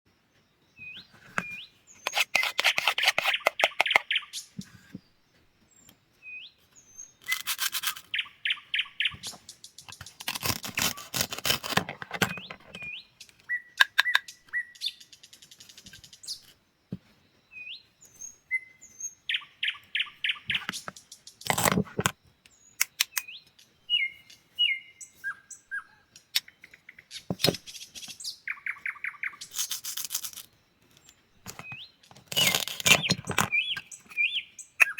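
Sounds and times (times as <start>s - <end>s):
bird chirps: 0.5s - 16.6s, 17.2s - 21.8s, 22.5s - 34.9s
vegetables being cut crackling: 9.9s - 12.4s, 21.5s - 21.8s, 32.2s - 33.4s.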